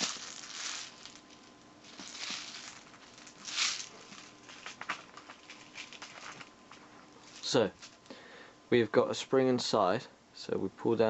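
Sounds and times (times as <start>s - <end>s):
soft rustling swishes: 0.0s - 8.0s.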